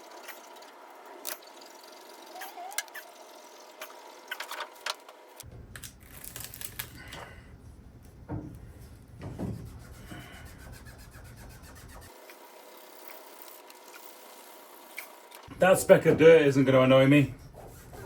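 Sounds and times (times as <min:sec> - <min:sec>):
rubbing and scraping strokes: 0:08.7 - 0:15.2, 0:16.7 - 0:18.0.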